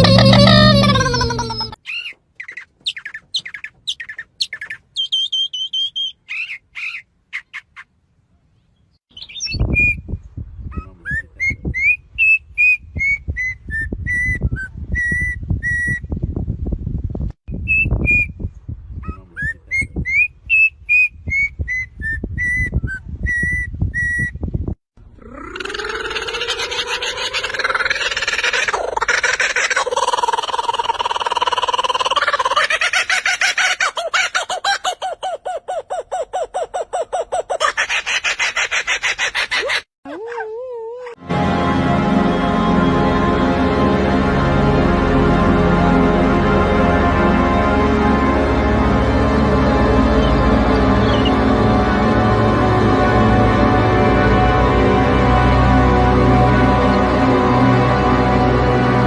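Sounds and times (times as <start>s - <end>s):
birds chirping: 0.0s - 12.4s, 50.0s - 51.5s
birds whistling: 0.1s - 7.8s, 9.1s - 10.0s, 51.0s - 51.4s
many bird calls: 51.0s - 51.4s.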